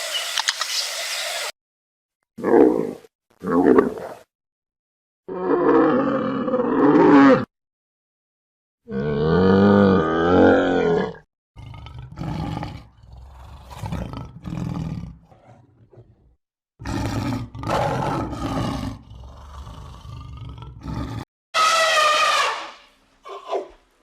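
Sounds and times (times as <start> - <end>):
big cat roaring: 5.3 - 7.5, 8.9 - 21.3
big cat grunting: 8.9 - 21.3.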